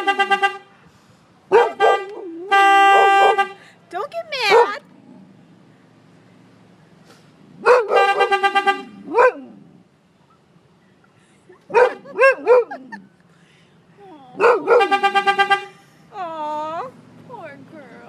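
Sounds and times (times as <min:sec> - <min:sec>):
dog barking: 0:01.5 - 0:02.3, 0:02.9 - 0:03.5, 0:07.6 - 0:08.3, 0:09.1 - 0:09.5, 0:11.7 - 0:12.9, 0:14.4 - 0:15.0
car horn stuttering beeps: 0:01.8 - 0:03.6, 0:07.9 - 0:09.0, 0:14.7 - 0:15.8.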